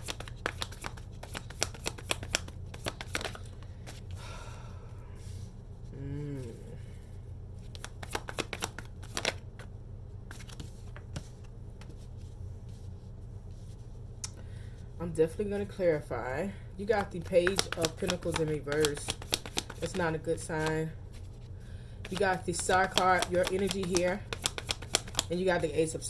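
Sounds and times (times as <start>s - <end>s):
cards being shuffled: 0.0s - 4.1s, 7.6s - 9.7s, 10.3s - 12.8s, 16.9s - 21.4s, 22.0s - 25.7s.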